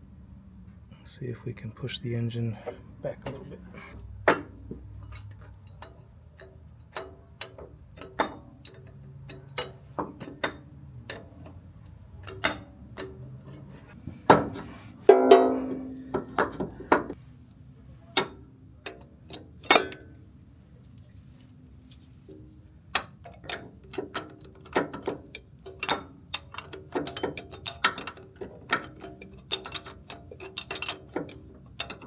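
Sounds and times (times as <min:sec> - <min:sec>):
hand tools clinking on metal: 0:02.0 - 0:17.2, 0:18.0 - 0:20.2, 0:22.9 - 0:32.0
loud ringing metal clang: 0:15.1 - 0:17.1.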